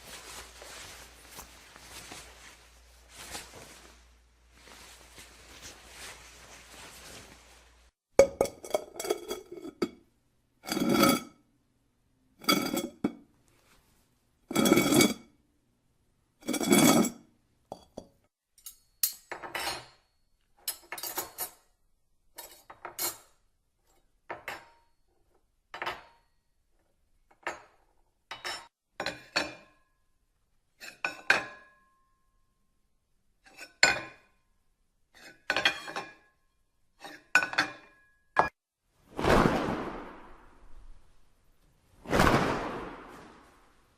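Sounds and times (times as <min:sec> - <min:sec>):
dishes and cutlery clinking: 0:08.2 - 0:10.0, 0:17.7 - 0:21.7, 0:22.4 - 0:23.4, 0:27.4 - 0:29.8, 0:30.8 - 0:31.8, 0:35.2 - 0:36.3, 0:37.0 - 0:38.6.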